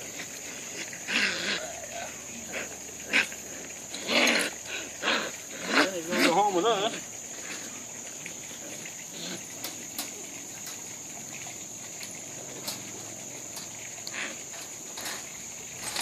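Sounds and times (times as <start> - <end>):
high-pitched insect chorus: 0.0 - 16.0
faint clicks and rustles: 7.2 - 16.0.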